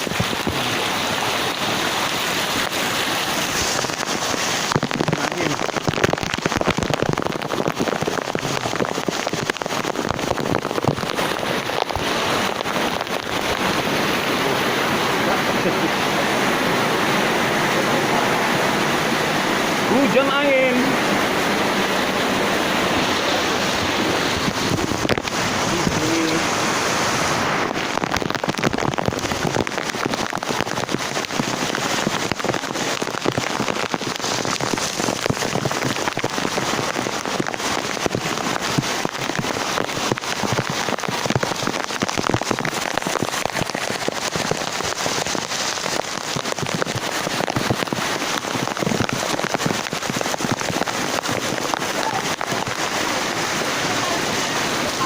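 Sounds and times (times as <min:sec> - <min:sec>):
heavy rain patter: 0:00.0 - 0:55.0.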